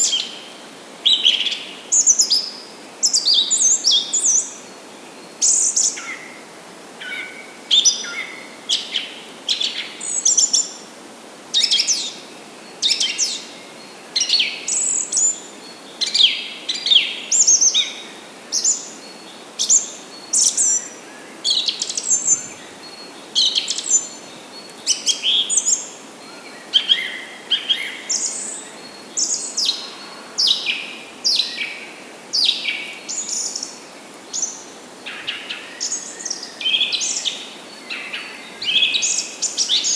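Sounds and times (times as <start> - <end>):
faint background hiss: 0.0 - 39.9
songbirds chirping and trilling: 11.6 - 39.9.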